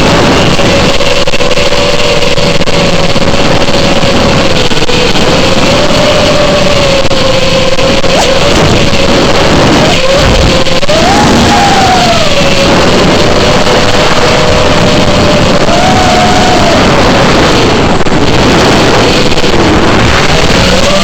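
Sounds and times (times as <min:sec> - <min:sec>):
heavy wind: 0:00.0 - 0:21.0
quadcopter motors whining: 0:00.0 - 0:21.0.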